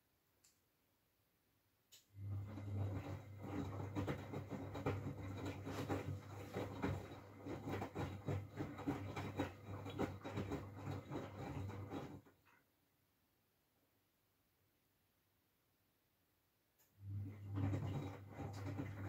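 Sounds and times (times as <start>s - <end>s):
washing machine motor hum: 2.1s - 12.5s, 16.9s - 19.0s
wet laundry knocking in drum: 3.0s - 12.1s.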